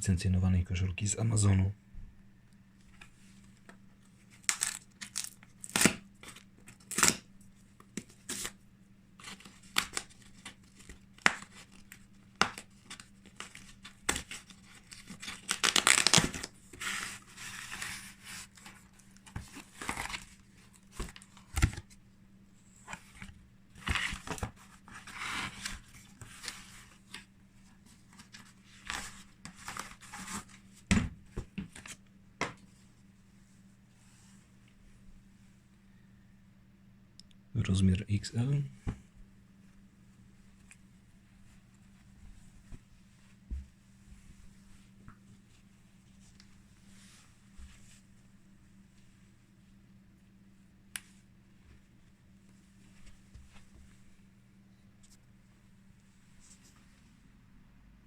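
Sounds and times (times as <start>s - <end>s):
packaging tearing: 4.4s - 6.0s, 14.9s - 16.5s.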